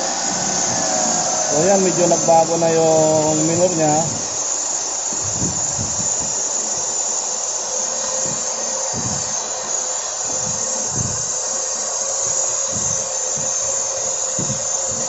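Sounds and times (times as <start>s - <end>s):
car engine idling: 0.0s - 5.3s
steady hiss: 0.0s - 15.0s.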